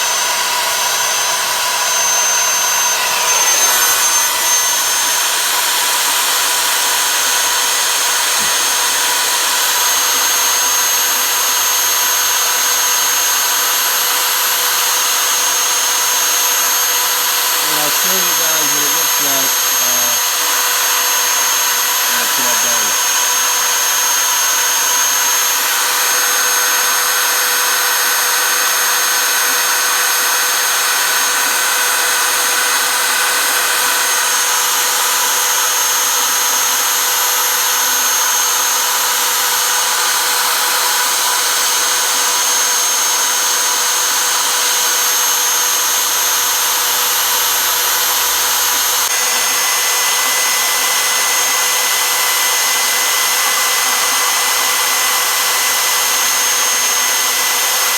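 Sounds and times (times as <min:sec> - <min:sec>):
router spindle whining: 0:00.0 - 0:57.9
dense hiss of cutting: 0:16.4 - 0:24.7.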